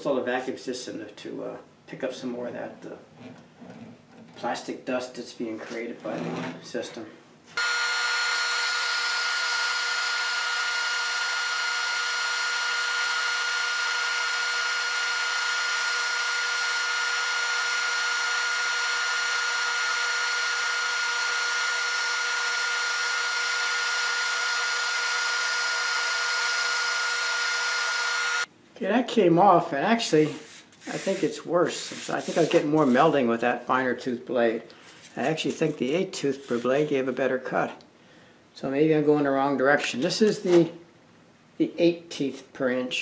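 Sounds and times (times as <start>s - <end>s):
dust collection vacuum: 7.6s - 15.3s
band saw cutting plastic: 7.6s - 28.5s.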